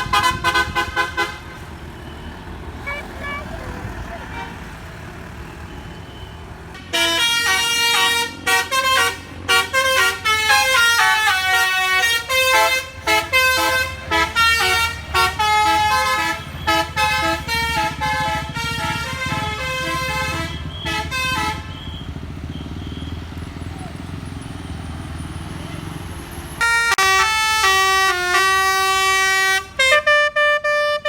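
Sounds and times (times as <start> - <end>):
musical air horn tune: 0.0 - 1.6, 2.8 - 3.6, 6.9 - 21.8, 26.6 - 31.0
bus engine rumble: 0.0 - 31.0.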